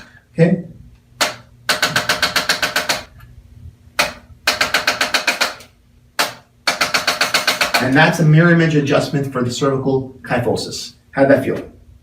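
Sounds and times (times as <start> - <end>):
adjusting instrument rapid clicks: 1.2 - 3.2, 4.0 - 8.0.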